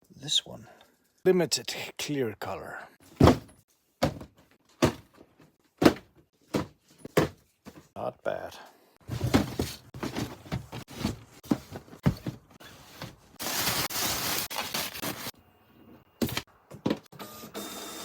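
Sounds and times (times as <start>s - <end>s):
cardboard boxes handled: 3.1s - 7.9s, 9.0s - 15.3s.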